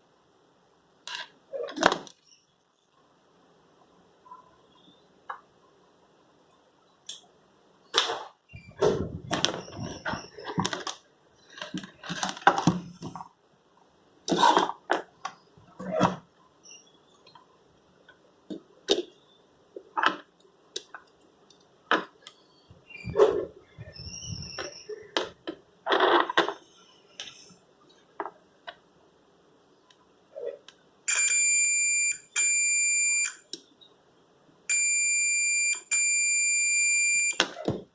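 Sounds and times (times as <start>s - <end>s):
plastic parts clicking and scraping: 9.2s - 13.2s.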